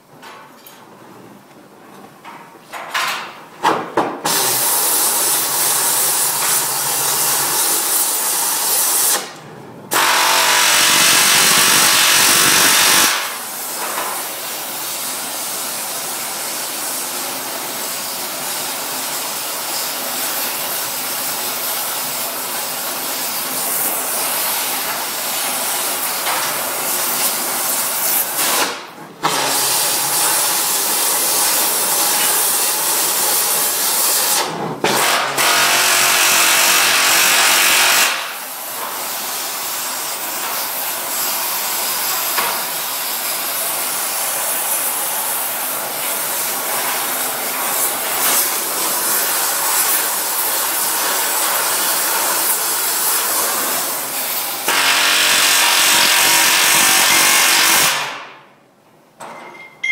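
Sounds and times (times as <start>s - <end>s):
metalworking tool hissing: 4.3s - 9.3s, 9.9s - 13.8s.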